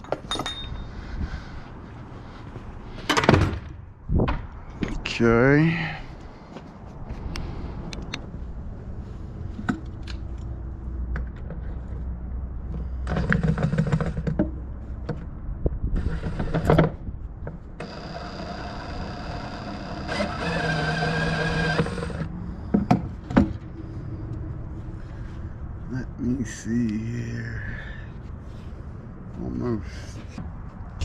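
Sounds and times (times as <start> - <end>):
small electric power tool motor: 17.8 - 22.3.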